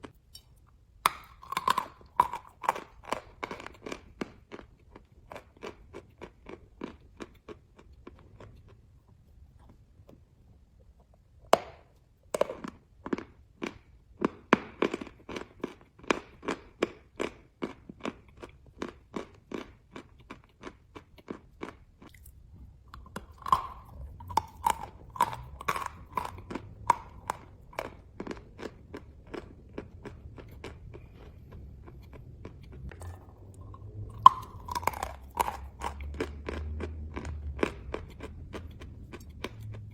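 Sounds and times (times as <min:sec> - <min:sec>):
crunching chews: 0:00.0 - 0:10.3, 0:11.7 - 0:39.9.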